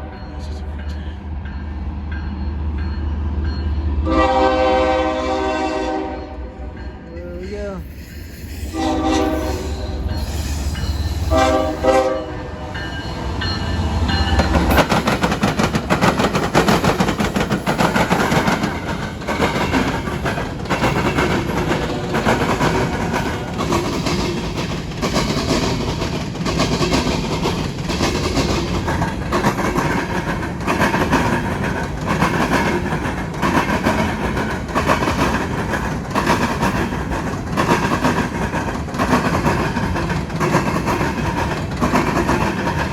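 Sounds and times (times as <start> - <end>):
locomotive horn blasts: 4.0 - 6.7, 8.7 - 10.1, 11.3 - 12.9
train wheels clickety-clack: 6.8 - 42.9.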